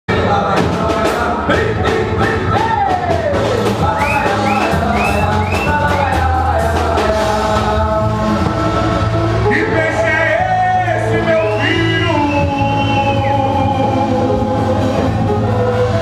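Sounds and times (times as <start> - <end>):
samba percussion: 0.1 - 9.3
person singing: 0.1 - 16.0.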